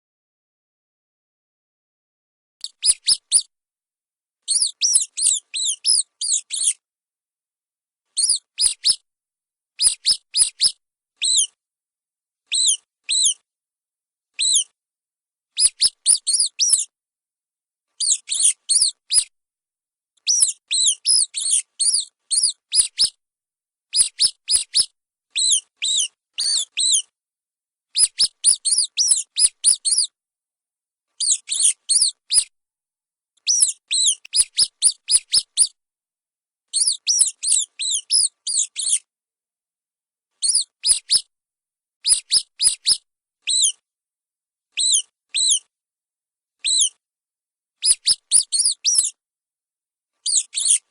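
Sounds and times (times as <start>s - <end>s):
mice squeaking: 2.6s - 3.5s, 4.5s - 6.8s, 8.2s - 9.0s, 9.8s - 11.6s, 12.5s - 13.4s, 14.4s - 14.7s, 15.6s - 16.9s, 18.0s - 19.3s, 20.3s - 23.2s, 23.9s - 27.1s, 28.0s - 30.1s, 31.2s - 32.5s, 33.4s - 35.8s, 36.7s - 39.1s, 40.4s - 41.3s, 42.0s - 43.8s, 44.8s - 45.7s, 46.6s - 47.0s, 47.8s - 49.2s, 50.2s - 50.9s.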